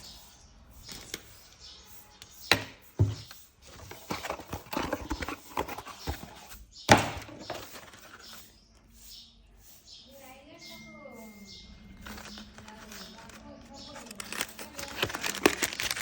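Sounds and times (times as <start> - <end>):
plastic parts knocking and clicking: 2.5 - 8.4, 12.0 - 16.0
packaging rustling: 3.7 - 6.5, 11.9 - 16.0.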